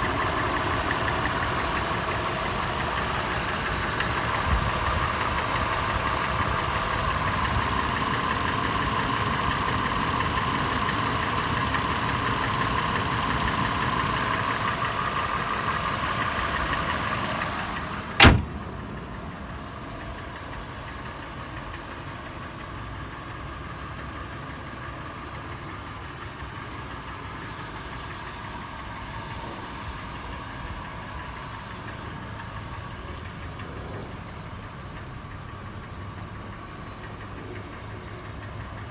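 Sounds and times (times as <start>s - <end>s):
engine idling with metallic tapping: 0.0s - 38.9s
sharp bang: 18.2s - 18.7s.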